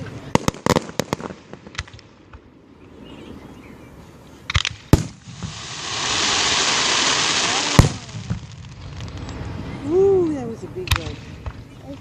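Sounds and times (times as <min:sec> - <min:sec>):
fireworks bangs: 0:04.5 - 0:09.8.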